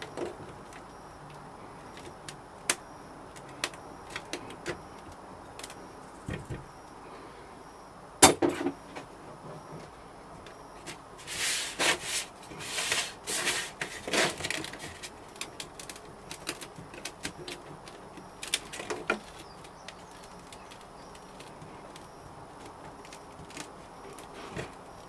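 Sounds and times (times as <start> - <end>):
scraping brushing strokes: 10.9 - 15.2.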